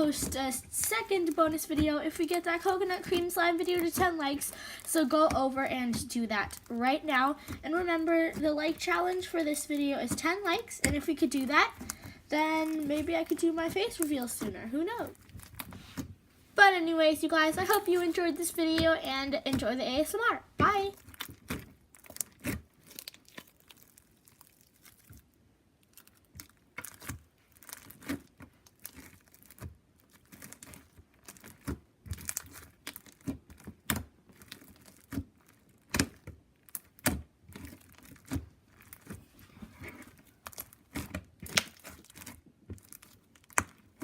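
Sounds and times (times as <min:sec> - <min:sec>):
slime squished by hand: 0:17.4 - 0:44.0.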